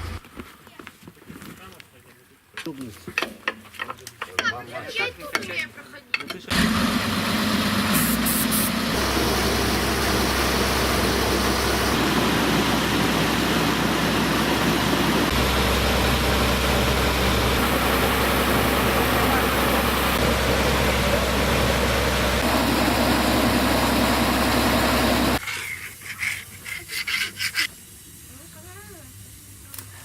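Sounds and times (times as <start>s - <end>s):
tractor engine starting and running: 0.0s - 0.2s, 6.5s - 25.4s
voices: 17.6s - 23.8s.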